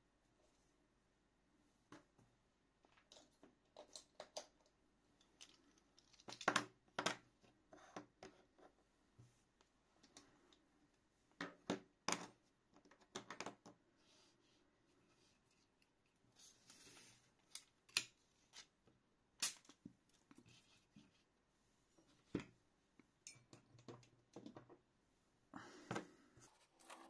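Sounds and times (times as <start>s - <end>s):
small objects clicking and rustling: 2.9s - 7.2s.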